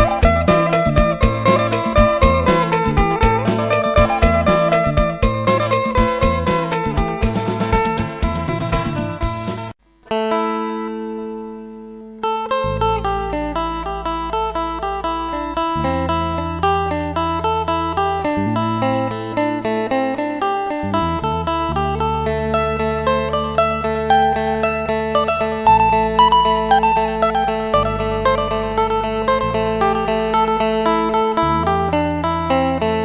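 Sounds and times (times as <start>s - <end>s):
low held bass: 0.0s - 9.8s, 20.8s - 33.0s
plucked lute notes: 0.0s - 33.0s.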